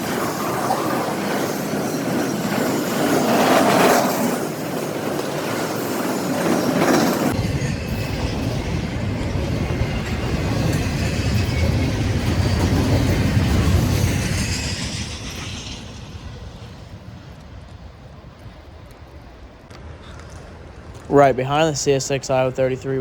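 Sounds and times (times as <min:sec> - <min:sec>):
freight train wheels on rails: 0:00.0 - 0:23.0.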